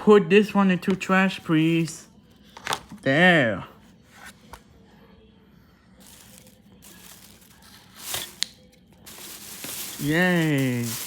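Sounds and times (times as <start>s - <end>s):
packaging rustling: 6.0s - 11.0s.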